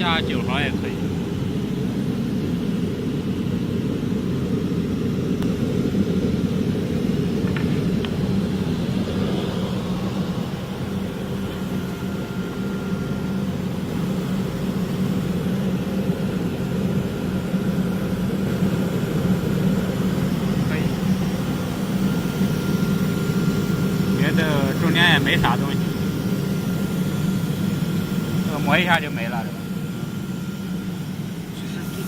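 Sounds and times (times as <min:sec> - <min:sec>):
router machinery humming: 0:00.0 - 0:32.0.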